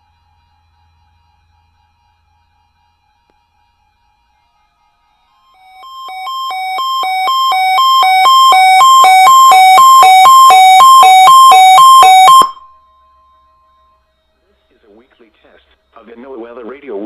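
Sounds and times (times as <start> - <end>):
faint steady tone: 5.3 - 17.0
two-tone electronic alarm beeping: 5.4 - 13.8.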